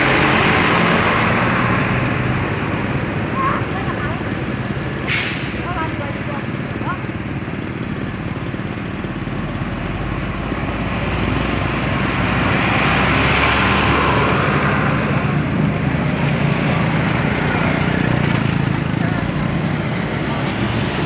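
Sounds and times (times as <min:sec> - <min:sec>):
vehicle driving past: 0:10.3 - 0:21.0.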